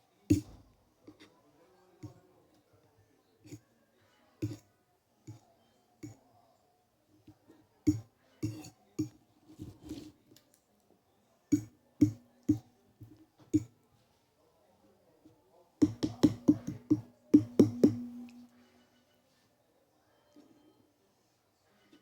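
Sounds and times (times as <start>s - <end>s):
cutlery clinking on a plate: 0.3s - 1.3s, 4.4s - 4.6s, 7.9s - 10.1s, 11.5s - 12.7s, 15.8s - 18.7s.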